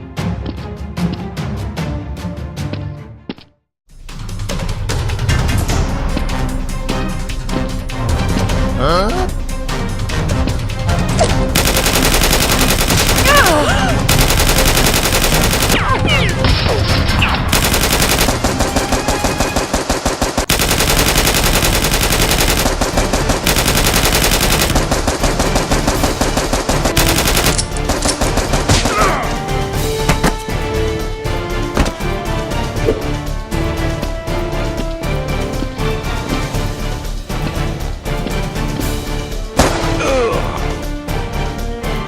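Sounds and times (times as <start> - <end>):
background music: 0.0 - 42.0
rapid automatic gunfire: 11.5 - 16.4, 17.2 - 29.2.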